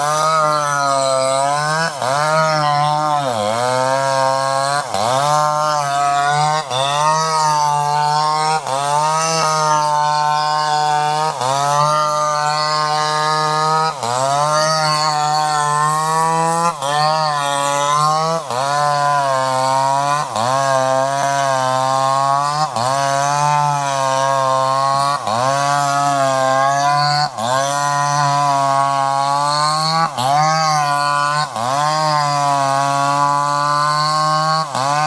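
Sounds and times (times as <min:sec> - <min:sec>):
chainsaw running at high revs: 0:00.0 - 0:35.0.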